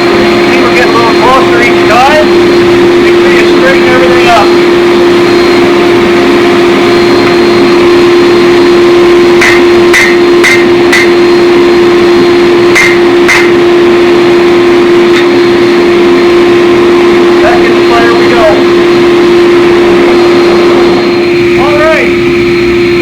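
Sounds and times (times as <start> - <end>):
loud steady hum: 0.0 - 23.0
hammer striking steel: 9.4 - 11.3, 12.7 - 13.6.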